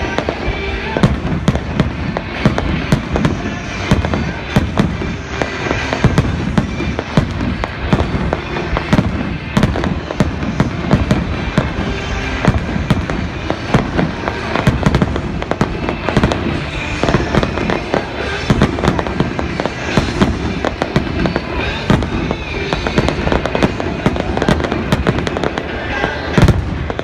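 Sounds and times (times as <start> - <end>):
fireworks banging and crackling: 0.0 - 27.0
music playing: 0.0 - 27.0.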